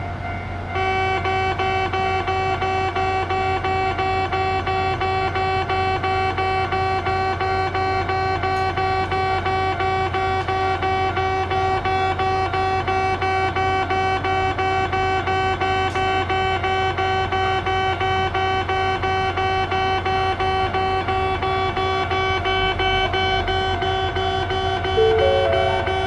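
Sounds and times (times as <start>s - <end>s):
level crossing bell dinging: 25.0s - 26.0s
rising stepped tone: 25.0s - 26.0s.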